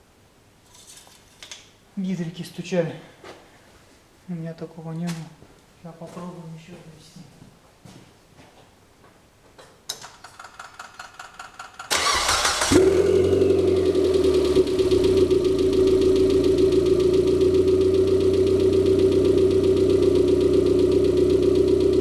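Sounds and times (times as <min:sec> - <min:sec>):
engine starter cranking: 0:10.0 - 0:14.9
car engine idling: 0:11.9 - 0:22.0.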